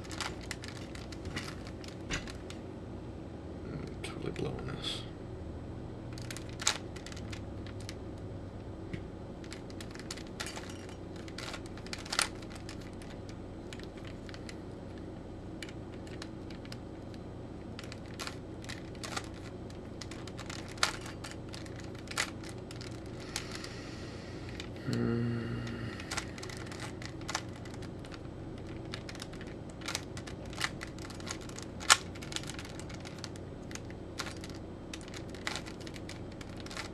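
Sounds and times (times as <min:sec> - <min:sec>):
puzzle cube clicking and rattling: 0:00.0 - 0:02.6, 0:06.1 - 0:08.0, 0:09.4 - 0:23.8, 0:25.6 - 0:36.9
steady low hum: 0:00.0 - 0:36.9.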